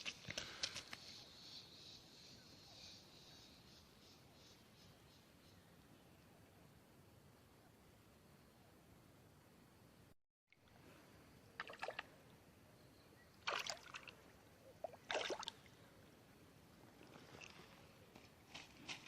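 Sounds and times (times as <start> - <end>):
water sloshing: 11.6 - 12.1, 13.4 - 15.8
water splashing: 11.6 - 12.1, 13.4 - 15.8.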